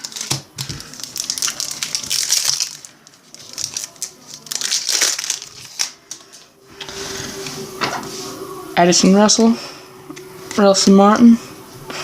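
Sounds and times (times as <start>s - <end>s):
foil wrapper crinkling: 0.0s - 6.5s.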